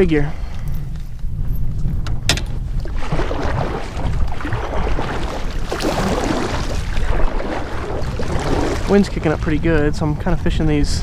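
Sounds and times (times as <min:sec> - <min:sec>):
wind buffeting microphone: 0:00.0 - 0:11.0
water lapping against kayak: 0:02.5 - 0:11.0.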